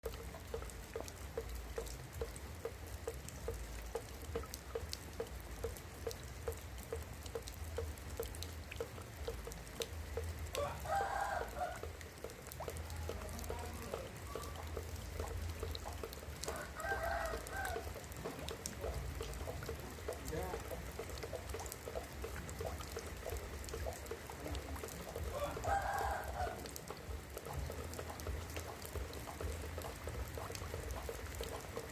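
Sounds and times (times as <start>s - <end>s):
rain dripping on roof tiles: 0.0s - 31.9s.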